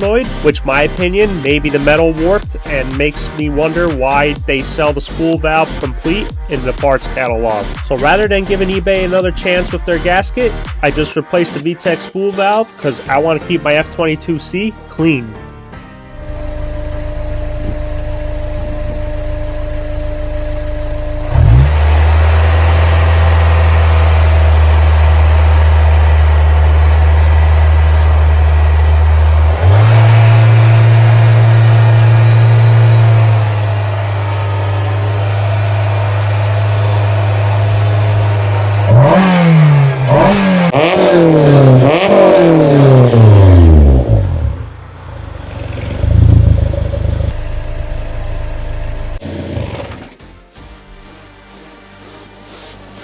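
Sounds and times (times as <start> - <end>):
throttle blips: 16.1 - 21.8, 47.3 - 49.2
car engine revving: 16.1 - 50.0.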